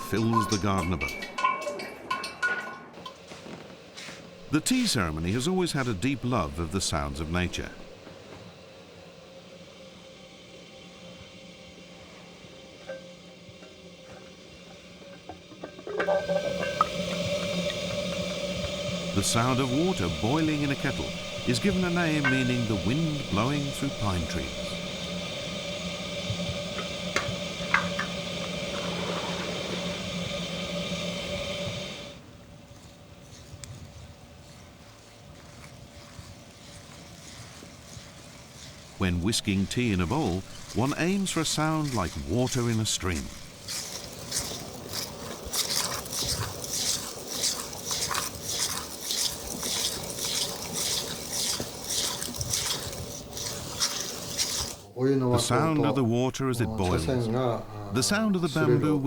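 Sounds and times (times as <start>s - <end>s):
kettle simmering with hum and hiss: 0.0s - 59.0s
tea whisk swishing: 16.0s - 32.2s, 34.4s - 54.9s.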